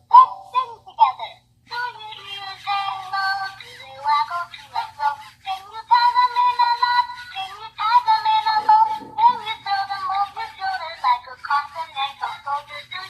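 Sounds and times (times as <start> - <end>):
toy speaker playing sung melody: 0.1 - 13.0.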